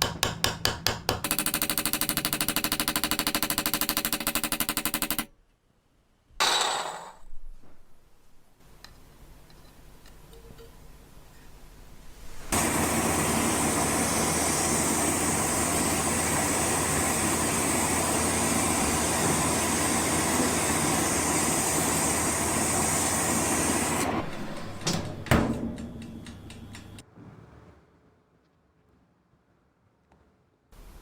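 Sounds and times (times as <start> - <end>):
faint ticking: 1.2 - 5.3
motorised tool running: 1.2 - 5.3, 12.5 - 25.3.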